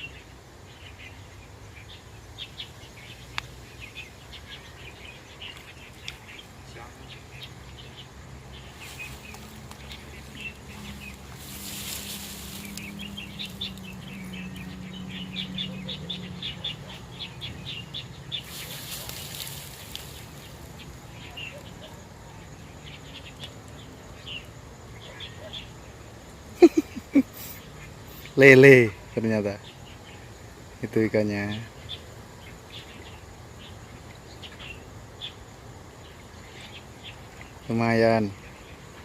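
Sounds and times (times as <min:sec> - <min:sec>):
low steady hum: 0:00.0 - 0:28.3
birds chirping: 0:00.0 - 0:39.0
rushing noises: 0:08.6 - 0:14.4.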